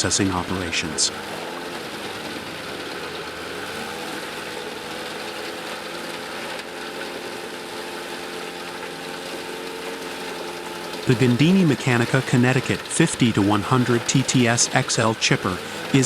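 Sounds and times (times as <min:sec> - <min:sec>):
wood chipper engine drone: 0:00.0 - 0:16.0.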